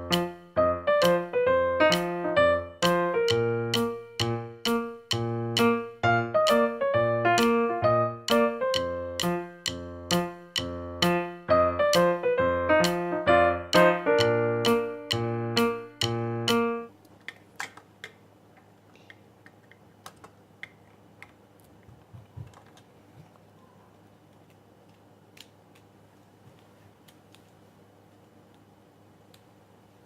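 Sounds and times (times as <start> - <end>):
piano-like music: 0.0 - 16.9.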